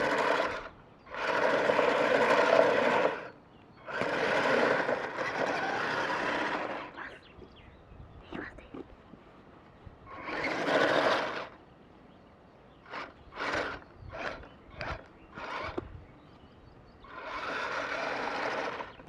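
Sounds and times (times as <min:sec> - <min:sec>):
toy snow vehicle tracks churning: 0:00.0 - 0:07.0, 0:10.1 - 0:11.6, 0:12.8 - 0:15.8, 0:17.0 - 0:19.0.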